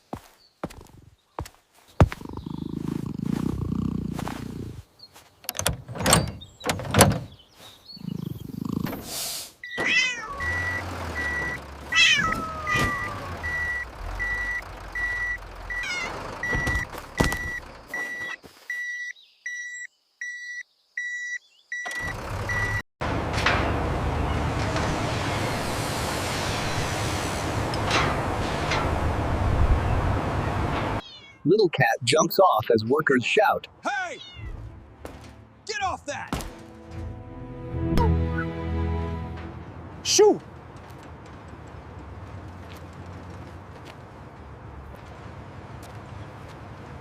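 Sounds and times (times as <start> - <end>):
reversing alarm beeping: 9.6 - 11.6, 12.8 - 22.8
cat meowing: 9.7 - 10.5, 11.9 - 13.4, 15.8 - 16.2, 31.0 - 31.5, 34.1 - 34.6
low engine drone: 23.0 - 31.0.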